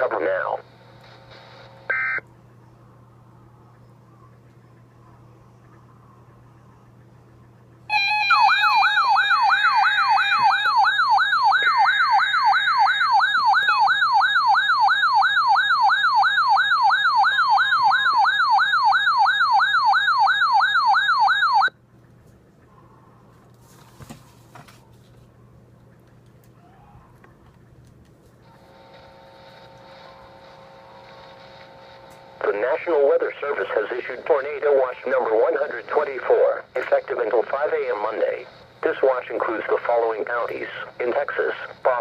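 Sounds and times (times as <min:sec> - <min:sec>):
electronic emergency siren wailing: 0:07.9 - 0:21.7.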